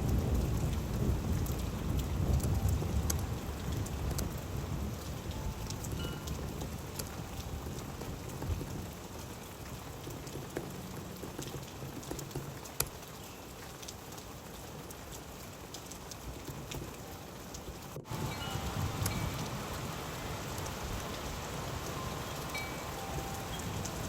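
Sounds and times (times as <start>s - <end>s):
steady rain falling: 0.0s - 24.0s
drops ticking on hard surfaces: 9.6s - 14.2s.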